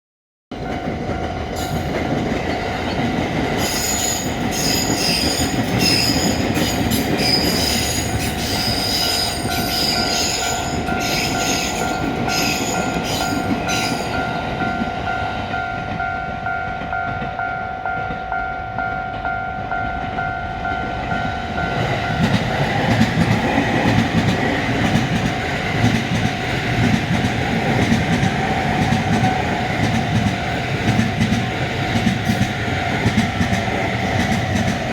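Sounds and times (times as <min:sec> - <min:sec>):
train wheels squealing on rails: 0:01.6 - 0:15.0
level-crossing bell ringing: 0:07.5 - 0:23.0.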